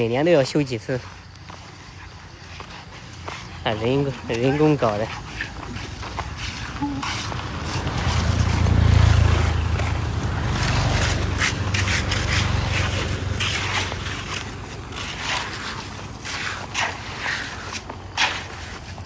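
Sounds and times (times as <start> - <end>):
rough scraping noise: 0.8 - 19.0
vehicle passing by: 3.3 - 17.6.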